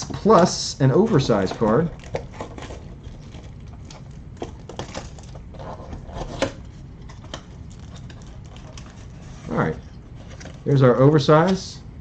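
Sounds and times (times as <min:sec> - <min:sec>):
card packs clicking and crinkling: 0:01.1 - 0:10.7.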